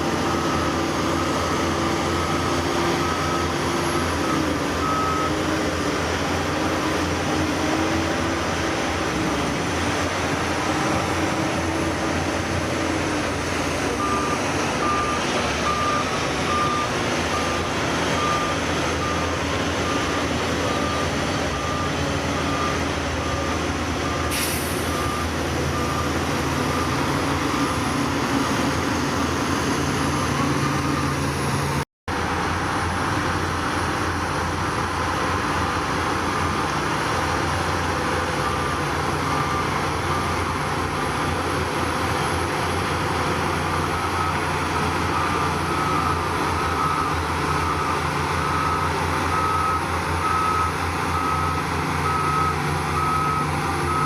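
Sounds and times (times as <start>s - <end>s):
reversing alarm beeping: 0.0s - 31.8s, 37.3s - 54.0s
heavy diesel machinery running: 0.0s - 54.0s.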